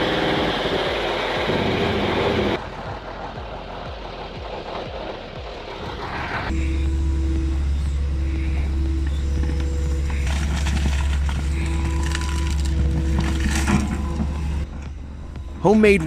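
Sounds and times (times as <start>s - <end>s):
heavy machine engine droning: 0.0s - 16.0s
crackling scraping noise: 9.3s - 14.9s.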